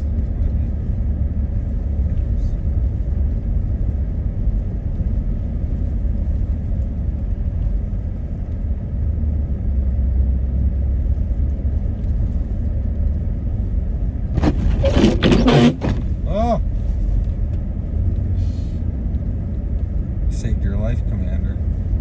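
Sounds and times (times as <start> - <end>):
car road and engine rumble: 0.0 - 22.0.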